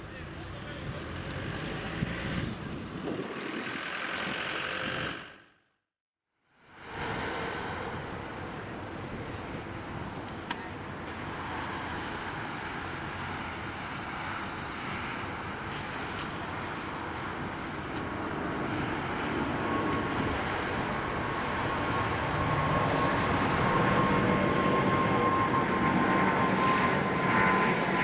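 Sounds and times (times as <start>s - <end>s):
jet engines roaring: 6.8s - 28.0s.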